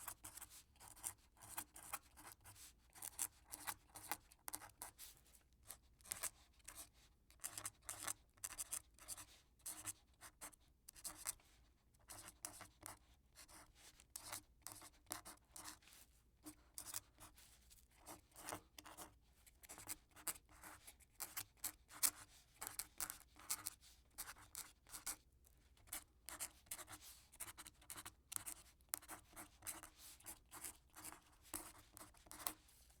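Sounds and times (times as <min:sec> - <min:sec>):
quill nib scratching paper: 0:26.3 - 0:32.6.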